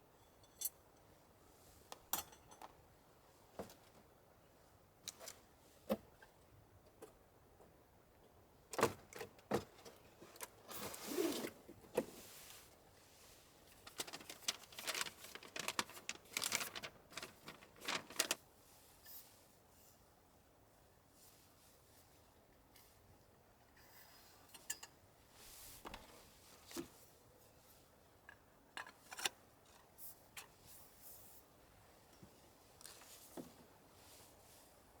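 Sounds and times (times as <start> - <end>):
rustling: 10.6 - 18.4.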